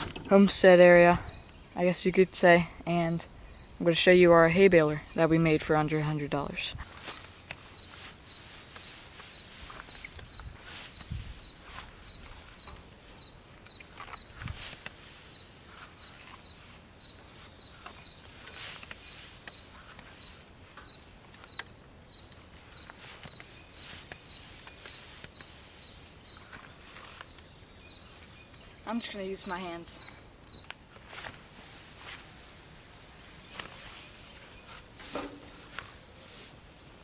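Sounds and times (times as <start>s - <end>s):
insects chirping: 0.0s - 37.0s
footsteps in dry grass: 6.8s - 28.9s, 30.0s - 37.0s.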